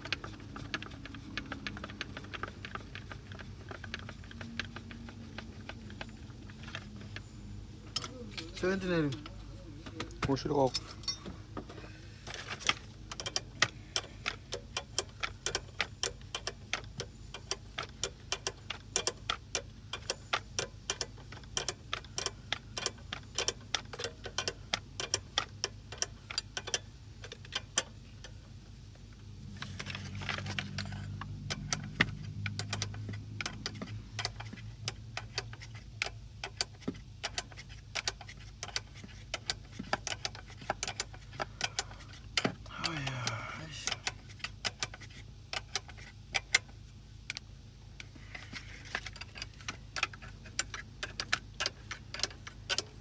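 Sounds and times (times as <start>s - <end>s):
steady low hum: 0.0s - 53.0s
hand tools clicking and clinking: 9.9s - 11.4s.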